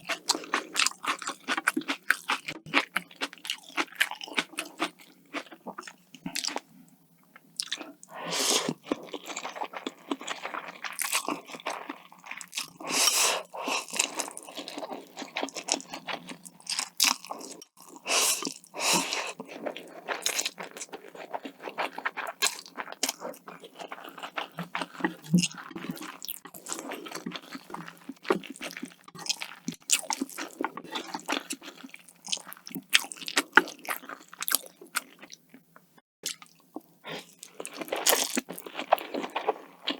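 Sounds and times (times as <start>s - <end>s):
crisp crunching and chewing: 0.0s - 6.6s, 8.7s - 35.4s, 36.2s - 39.9s.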